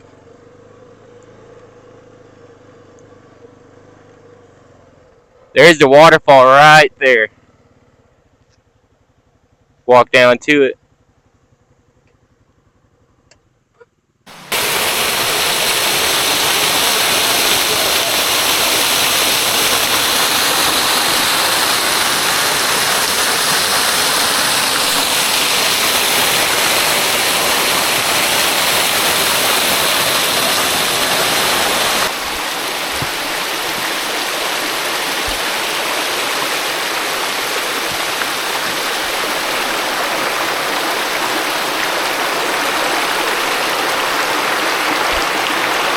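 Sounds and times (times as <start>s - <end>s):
waterfall rushing: 14.3s - 45.9s.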